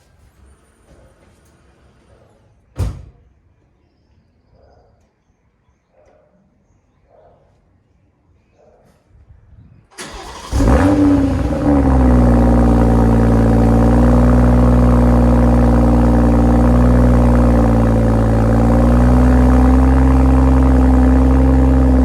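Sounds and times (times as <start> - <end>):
car starter turning: 9.9 - 13.5
car engine idling: 10.0 - 22.0.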